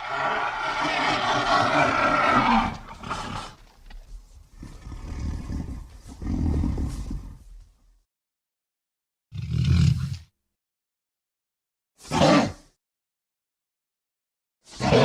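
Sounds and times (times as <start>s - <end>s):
high screeching monster roar: 0.0s - 3.6s
deep low growl: 0.0s - 8.0s.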